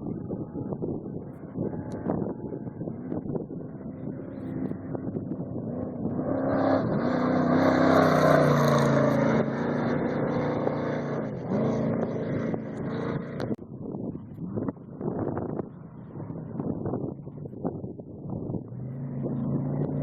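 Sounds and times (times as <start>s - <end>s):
race vehicle engine passing: 0.3s - 13.6s, 18.6s - 20.0s.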